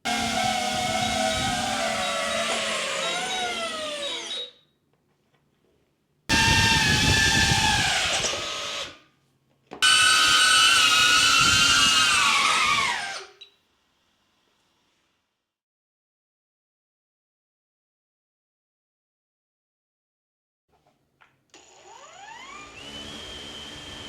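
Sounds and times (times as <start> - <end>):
drone propellers whirring: 0.1 - 2.5.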